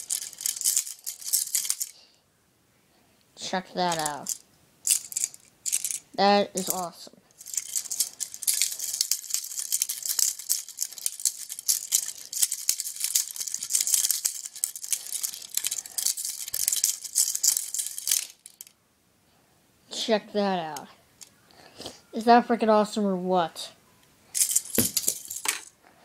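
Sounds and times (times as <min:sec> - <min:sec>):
handcuffs rattling and jangling: 0:00.0 - 0:02.0, 0:03.8 - 0:18.7, 0:24.3 - 0:25.7.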